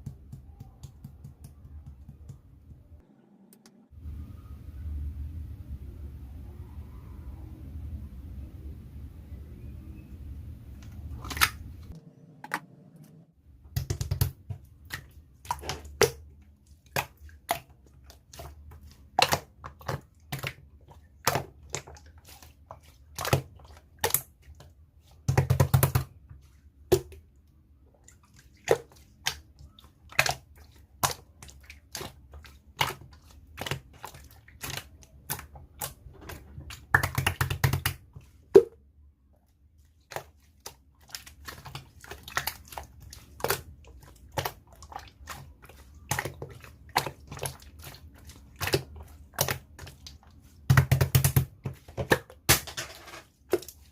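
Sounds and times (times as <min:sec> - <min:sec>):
slime squishing: 0:13.7 - 0:38.6, 0:39.2 - 0:52.6.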